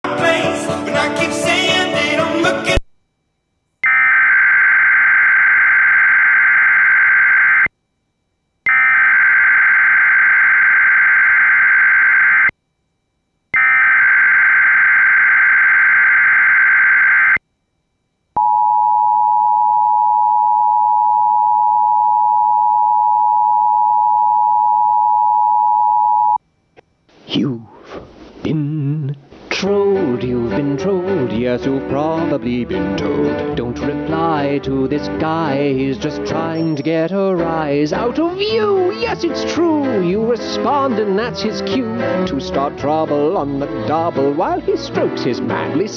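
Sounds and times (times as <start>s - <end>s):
harsh buzzing data tones: 3.2s - 12.6s, 13.5s - 20.0s.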